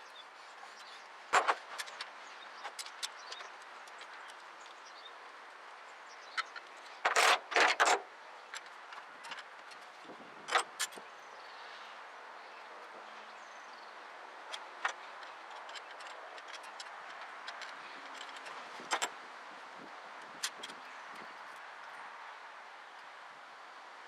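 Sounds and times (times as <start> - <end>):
hand tools clicking and knocking: 14.5 - 19.1.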